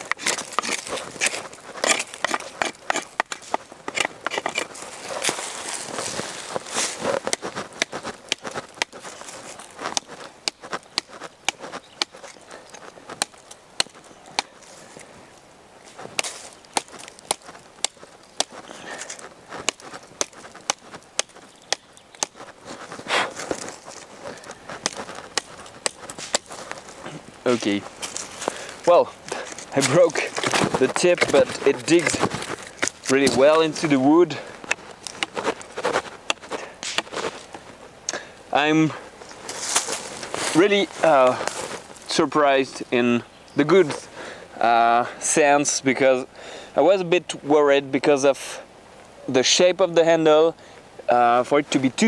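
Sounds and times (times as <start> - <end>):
wood crackling: 0.0 - 52.0
knife chopping into wood: 24.7 - 26.5, 36.3 - 37.3.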